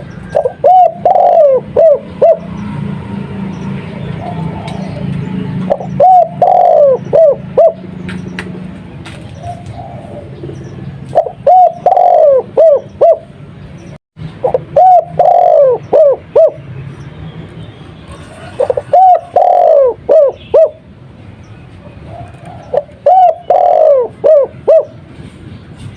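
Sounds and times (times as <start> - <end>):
dove cooing: 0.2 - 2.6, 4.1 - 5.0, 5.6 - 8.0, 9.4 - 13.3, 14.4 - 16.6, 18.2 - 20.8, 22.0 - 25.1.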